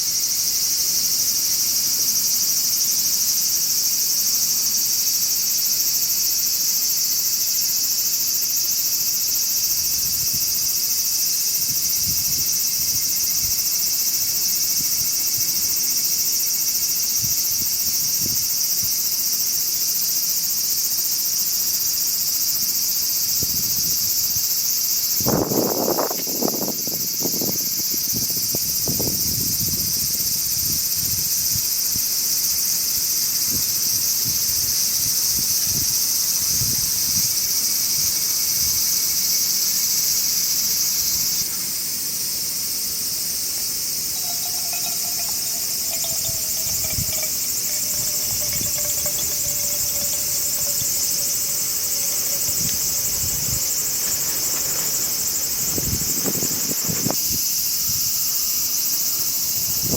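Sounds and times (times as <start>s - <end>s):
insects chirring: 0.0s - 59.9s
faint falling tone: 44.2s - 54.6s.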